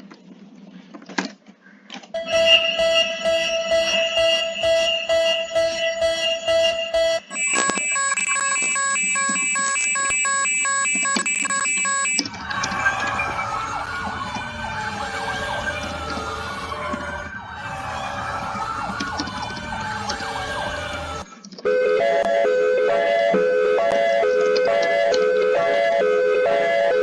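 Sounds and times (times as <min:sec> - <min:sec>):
siren wailing: 0:02.2 - 0:21.3, 0:22.8 - 0:27.0
electronic alert tones: 0:02.4 - 0:12.3.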